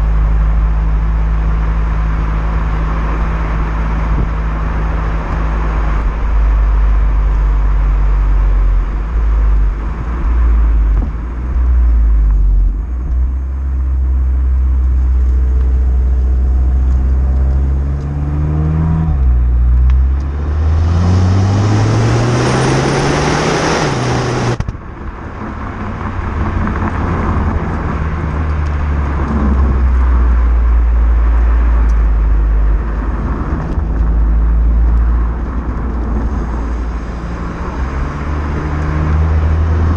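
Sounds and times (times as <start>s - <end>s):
car engine droning: 0.0s - 39.9s.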